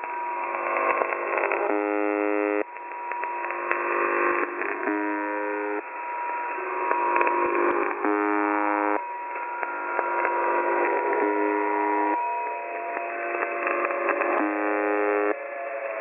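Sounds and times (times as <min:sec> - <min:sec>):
crackling radio static: 0:00.0 - 0:12.2, 0:12.9 - 0:15.4
harsh radio buzz tone: 0:00.5 - 0:02.6, 0:03.4 - 0:05.8, 0:06.6 - 0:09.0, 0:09.8 - 0:12.2, 0:13.4 - 0:15.4.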